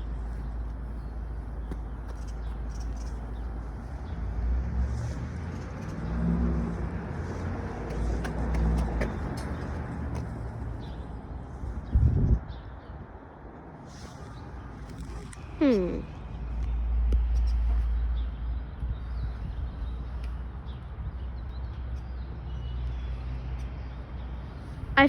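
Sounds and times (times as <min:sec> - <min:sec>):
vehicles passing: 0:00.0 - 0:25.0.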